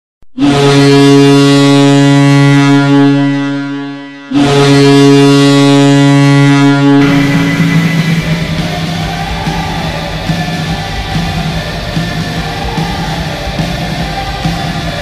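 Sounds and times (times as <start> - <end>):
deep goal horn blasts: 0.4 - 10.0.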